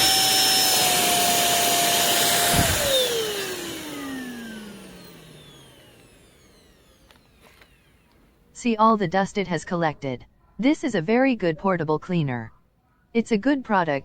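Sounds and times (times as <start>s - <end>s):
handheld vacuum cleaner motor whine: 0.0s - 8.2s.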